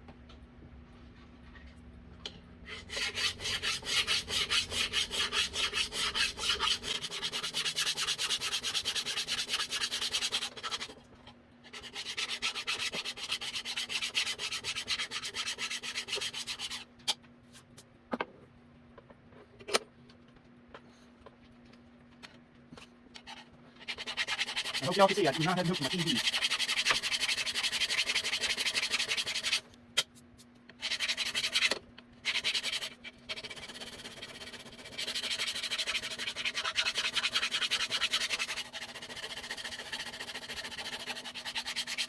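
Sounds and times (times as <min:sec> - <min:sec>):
file scraping metal: 0:02.6 - 0:10.9, 0:11.6 - 0:16.9, 0:23.2 - 0:29.6, 0:30.8 - 0:42.0.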